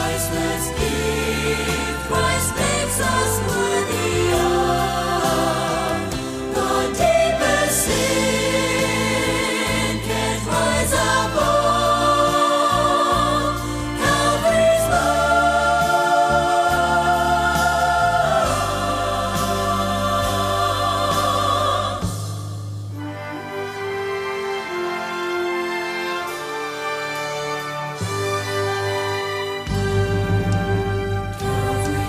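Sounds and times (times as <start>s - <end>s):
vocal group singing in harmony: 0.0s - 22.8s, 31.4s - 32.0s
bass accompaniment: 0.0s - 24.0s, 27.8s - 32.0s.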